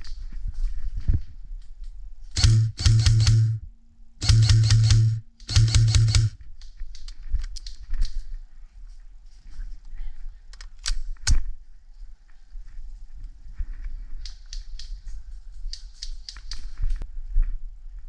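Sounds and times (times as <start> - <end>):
airsoft gun rapid fire: 2.4 - 3.6, 4.2 - 6.4
sharp snaps: 2.4 - 3.6, 4.2 - 8.2
rustling and clicks: 4.2 - 8.5, 12.3 - 17.1.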